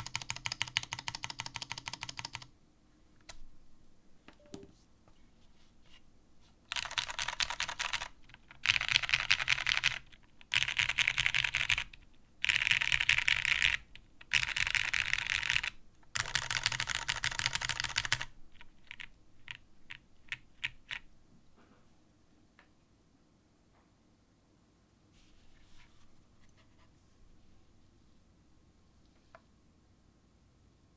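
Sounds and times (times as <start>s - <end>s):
mechanical keyboard keys pressed: 0.0s - 2.5s, 6.7s - 18.3s.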